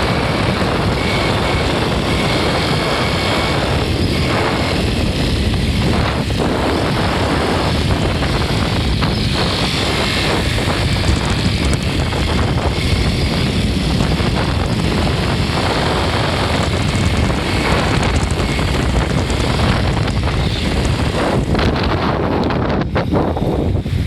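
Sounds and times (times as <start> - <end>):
abnormal engine noise: 0.0 - 24.0
scooter engine running: 0.0 - 24.0.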